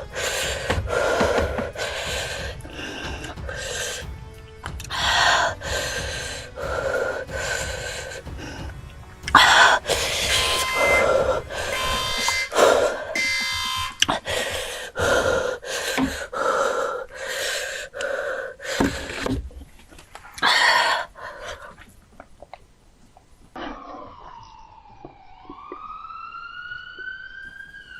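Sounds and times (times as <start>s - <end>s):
person gasping and panting: 0.0s - 13.2s, 14.0s - 19.4s, 20.4s - 21.9s.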